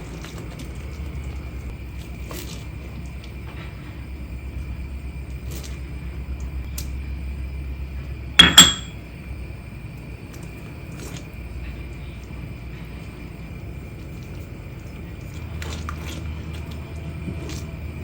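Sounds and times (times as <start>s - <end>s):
steady low hum: 0.0s - 18.0s
metallic clink of kitchenware: 8.4s - 9.0s.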